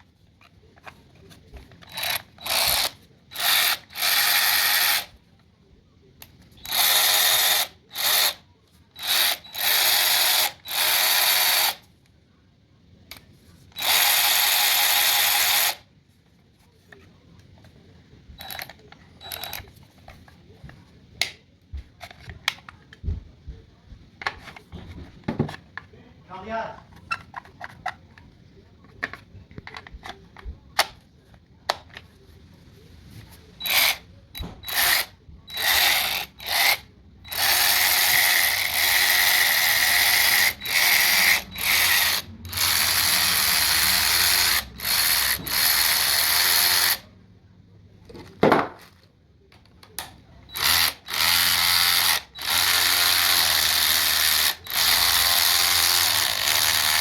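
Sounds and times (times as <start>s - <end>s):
electric ratchet running: 1.9s - 5.1s, 6.6s - 8.4s, 9.0s - 11.8s, 13.8s - 15.8s, 33.6s - 34.0s, 34.6s - 47.0s, 50.5s - 57.0s.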